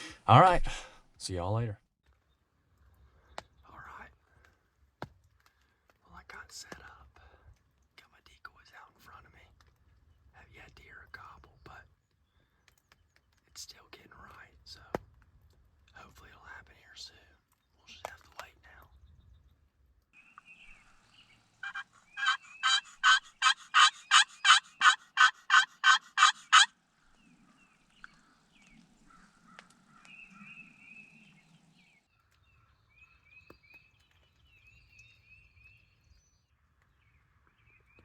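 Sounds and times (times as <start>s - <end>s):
thin bird chirps: 20.2s - 38.0s
turkey yelps: 21.6s - 26.8s.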